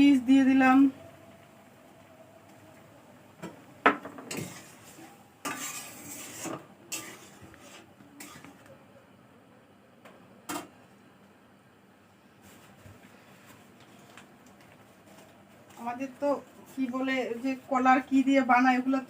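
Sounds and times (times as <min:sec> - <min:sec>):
utensil scraping a pan: 0:04.2 - 0:08.6.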